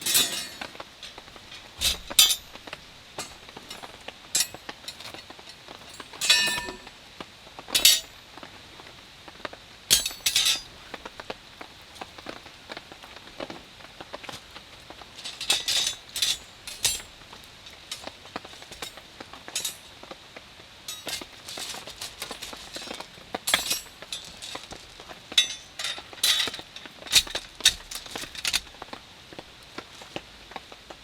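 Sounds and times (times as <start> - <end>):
cookware clinking and clattering: 0.0 - 5.2, 5.9 - 6.9, 7.8 - 8.1, 9.9 - 10.7, 15.2 - 18.9, 19.6 - 19.8, 20.9 - 28.7.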